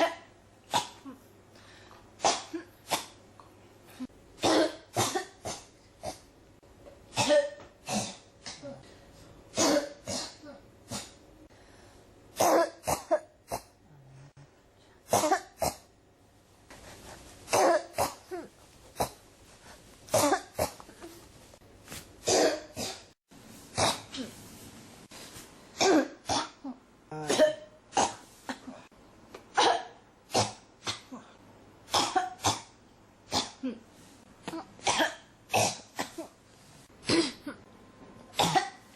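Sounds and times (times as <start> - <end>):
person coughing harshly: 0.0 - 1.2, 2.2 - 3.2, 4.4 - 6.2, 7.1 - 8.8, 9.5 - 11.2, 12.4 - 13.7, 15.1 - 15.9, 17.5 - 19.2, 20.1 - 21.2, 22.2 - 23.2, 25.7 - 28.9, 29.6 - 32.7, 33.3 - 33.8, 34.5 - 36.4, 37.0 - 37.6, 38.3 - 38.9.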